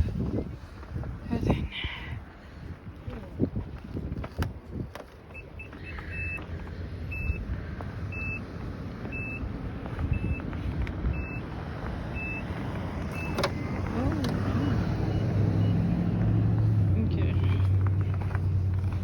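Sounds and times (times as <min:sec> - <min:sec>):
car warning beeper: 0:05.3 - 0:10.5, 0:11.1 - 0:11.5, 0:12.1 - 0:16.3.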